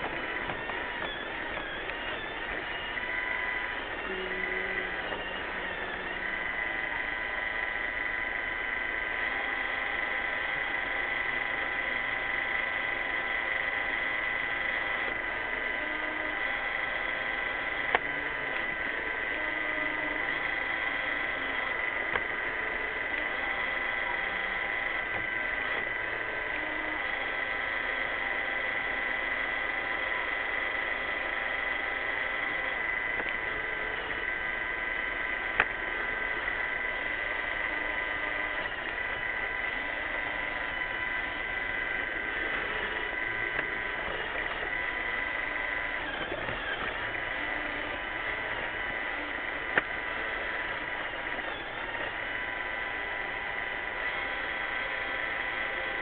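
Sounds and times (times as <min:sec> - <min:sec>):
robot vacuum running: 0:00.0 - 0:56.0
sharp click: 0:49.7 - 0:49.9.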